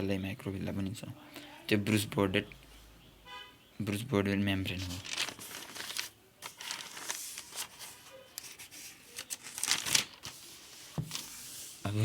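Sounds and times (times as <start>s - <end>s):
paper rustling and crinkling: 4.7s - 12.0s.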